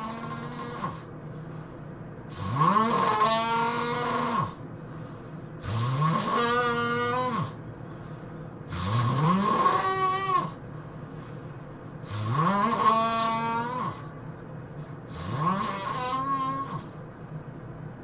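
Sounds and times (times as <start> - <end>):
loud drawn-out snoring: 0.0 - 1.1, 2.3 - 4.6, 5.6 - 7.6, 8.7 - 10.6, 12.0 - 14.2, 15.1 - 17.0.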